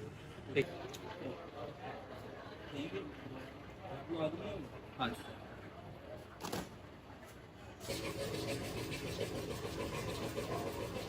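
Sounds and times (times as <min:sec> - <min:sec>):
engine starting and running: 0:07.8 - 0:10.8.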